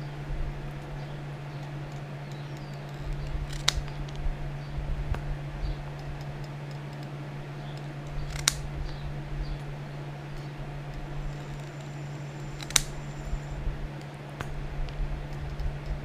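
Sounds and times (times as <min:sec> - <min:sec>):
low hum: 0:00.0 - 0:16.0
sharp clicks: 0:01.5 - 0:04.2, 0:05.9 - 0:09.0, 0:10.4 - 0:14.5.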